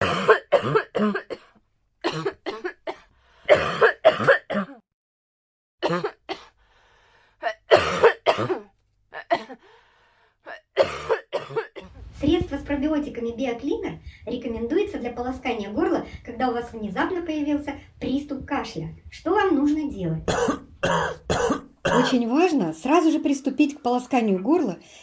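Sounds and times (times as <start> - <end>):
person coughing: 0.0 - 4.8, 5.8 - 6.5, 7.4 - 9.6, 10.5 - 11.9, 20.2 - 22.3.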